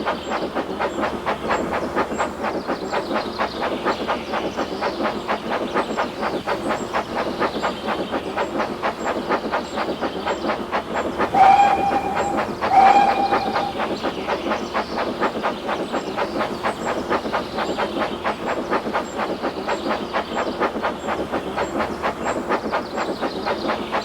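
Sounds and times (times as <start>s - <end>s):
steam train chugging: 0.0s - 24.0s
steam train whistle: 11.2s - 14.3s.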